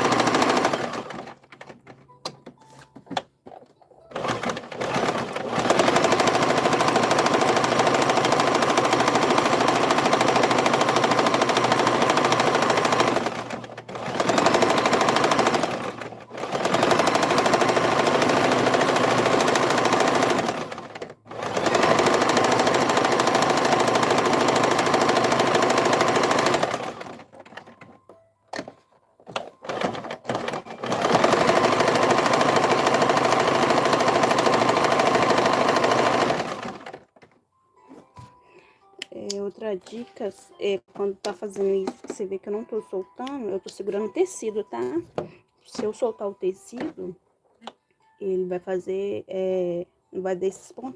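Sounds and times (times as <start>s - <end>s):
sewing machine stitching: 0.0s - 1.8s, 4.1s - 28.0s, 29.3s - 37.1s.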